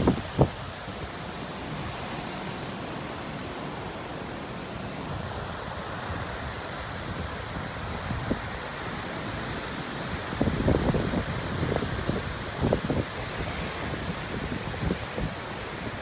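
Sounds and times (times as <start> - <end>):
strong wind rushing: 0.0 - 0.8, 10.2 - 16.0.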